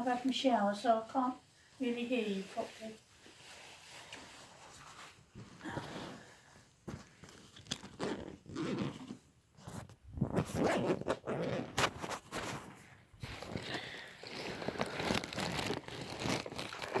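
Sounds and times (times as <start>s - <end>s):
bag rustling: 6.9s - 17.0s
zip being pulled: 7.6s - 12.2s, 13.2s - 17.0s.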